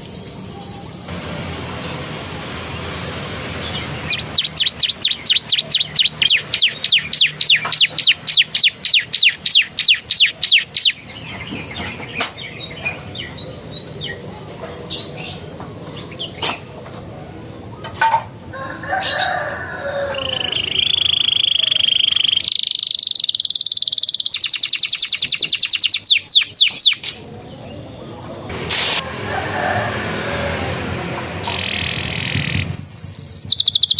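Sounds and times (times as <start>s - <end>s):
canary singing: 1.8s - 16.4s, 18.6s - 28.2s, 31.2s - 33.9s.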